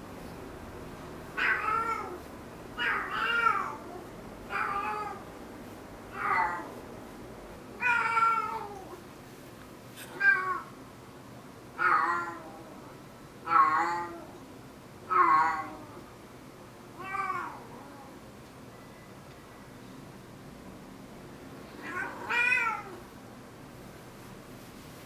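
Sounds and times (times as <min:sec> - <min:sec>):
cat meow-like calls: 0:21.8 - 0:23.0.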